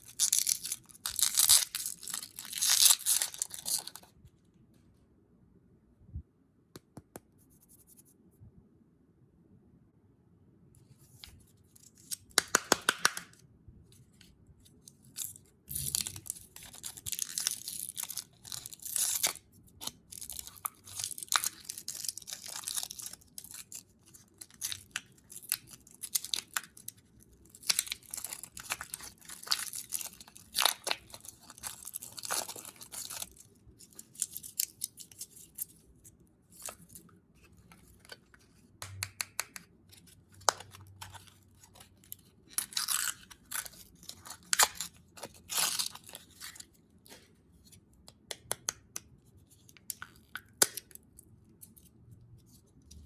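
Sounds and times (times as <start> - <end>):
candy wrappers crinkling: 0.0 - 4.1, 15.0 - 38.4, 39.0 - 47.3.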